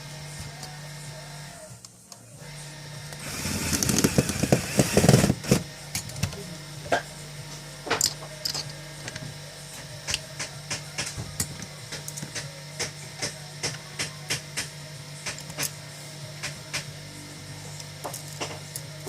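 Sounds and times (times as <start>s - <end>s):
steady low hum: 0.0s - 19.0s
sharp clicks and knocks: 18.0s - 18.7s.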